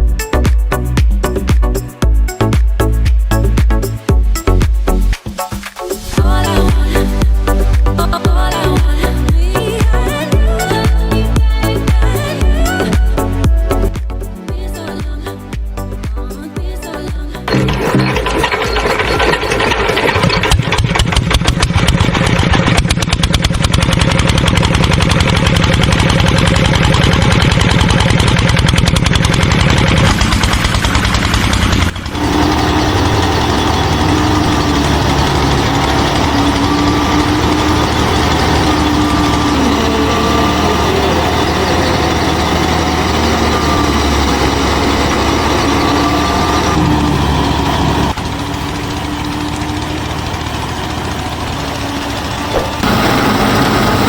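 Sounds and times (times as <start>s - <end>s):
small motor rattling and whining: 17.5s - 54.0s.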